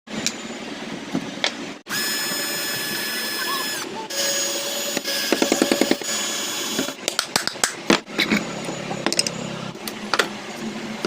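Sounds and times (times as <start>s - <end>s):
electric motor whining: 1.9s - 7.0s.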